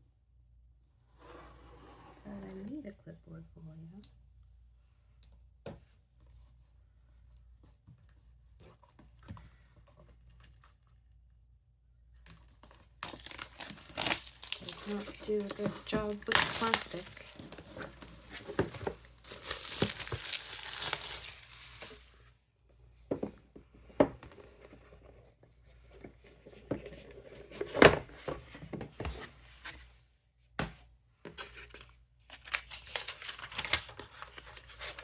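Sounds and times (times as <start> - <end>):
plastic wrapping tearing and crinkling: 12.6 - 22.1.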